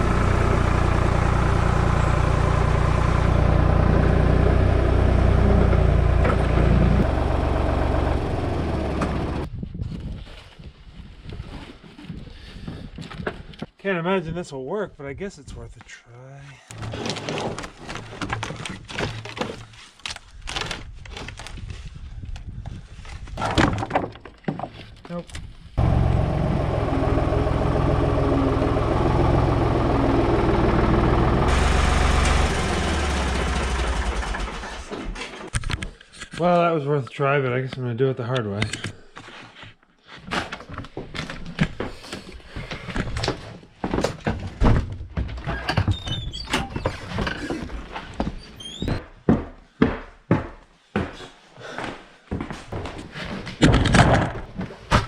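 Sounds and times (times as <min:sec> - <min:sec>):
engine running and shutting down: 0:00.0 - 0:09.5, 0:25.8 - 0:35.5.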